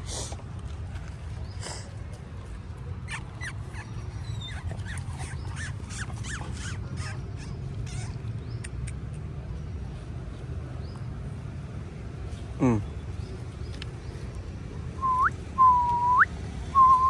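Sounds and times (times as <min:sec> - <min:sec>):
dog whimpering: 0:03.1 - 0:08.2.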